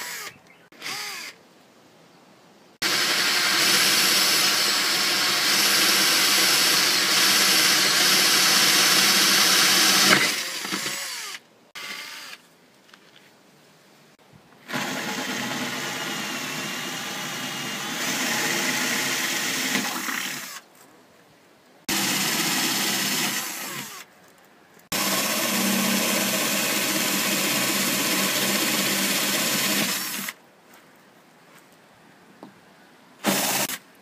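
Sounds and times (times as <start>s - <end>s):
power drill drilling: 0.0s - 1.4s, 2.8s - 12.4s, 14.7s - 20.6s, 21.9s - 24.1s, 24.9s - 30.4s, 33.2s - 33.8s.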